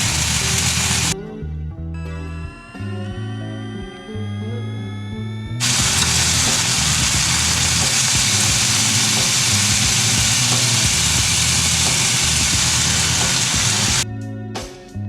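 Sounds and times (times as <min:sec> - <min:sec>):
chicken sizzling in a frying pan: 0:00.0 - 0:01.2, 0:05.6 - 0:14.0.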